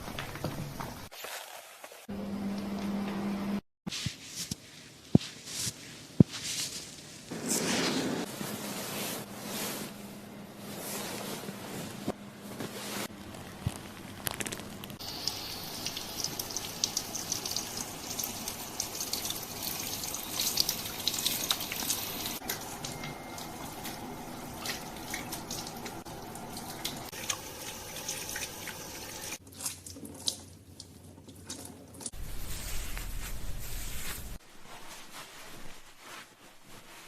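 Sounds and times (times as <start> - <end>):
tap water running and splashing: 0.0 - 1.1, 14.9 - 32.1
water crackles and drips: 13.3 - 32.2.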